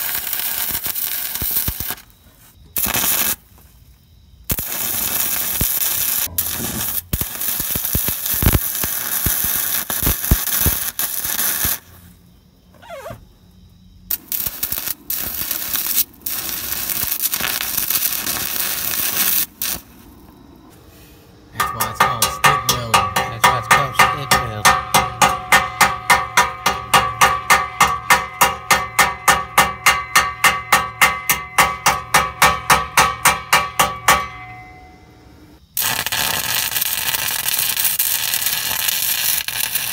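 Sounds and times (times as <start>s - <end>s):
welding arc crackling: 0.0s - 2.1s, 2.8s - 3.5s, 4.5s - 11.9s, 14.1s - 20.0s, 35.8s - 39.9s.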